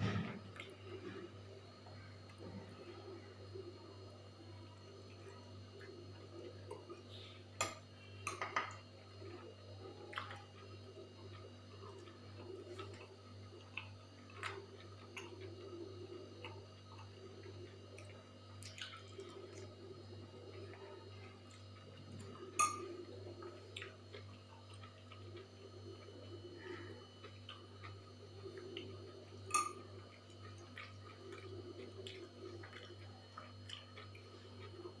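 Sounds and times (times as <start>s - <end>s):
steady low hum: 0.0s - 35.0s
dishes clinking: 22.6s - 22.9s, 29.5s - 29.8s.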